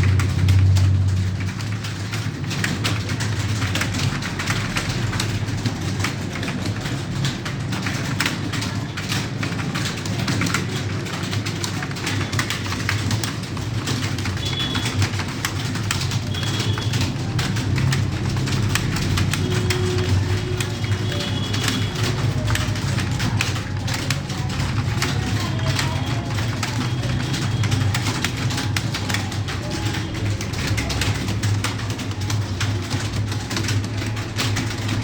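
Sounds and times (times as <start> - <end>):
rapid keyboard typing: 0.0 - 35.0.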